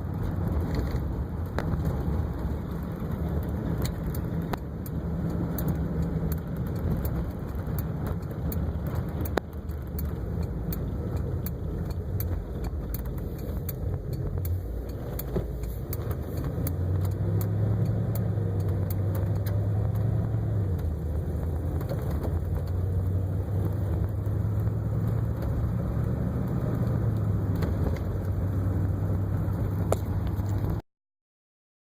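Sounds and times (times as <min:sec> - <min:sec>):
car engine running: 0:00.0 - 0:30.8.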